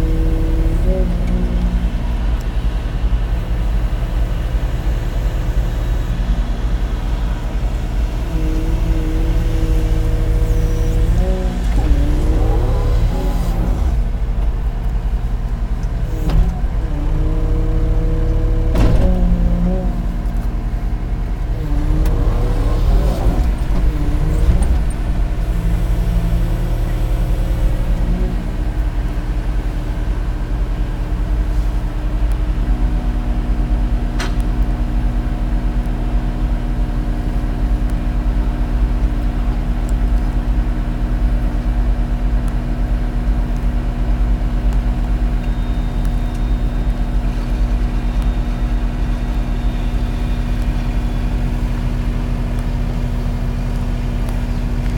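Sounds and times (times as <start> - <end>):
excavator diesel engine droning: 0.0 - 54.9
machine tones shifting pitch: 8.2 - 28.7
sharp clicks or clunks: 10.6 - 20.6, 21.3 - 28.4.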